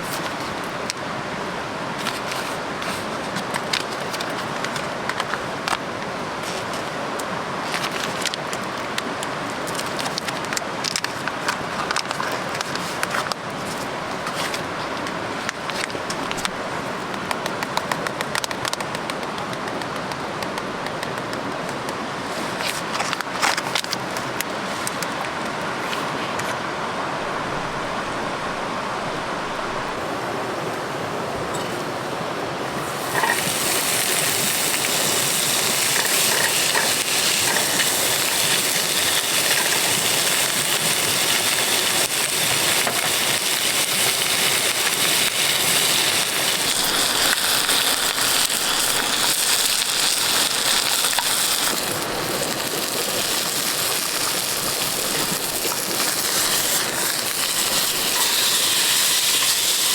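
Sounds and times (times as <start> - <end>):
food sizzling: 32.8 - 59.9.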